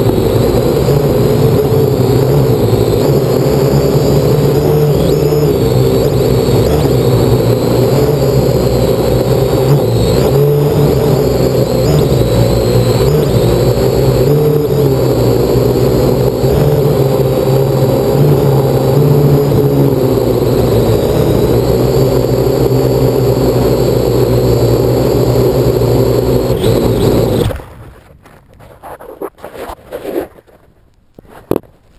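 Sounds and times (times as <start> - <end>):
drone propellers whirring: 0.0 - 27.7
faint clicks and rustles: 27.5 - 31.9.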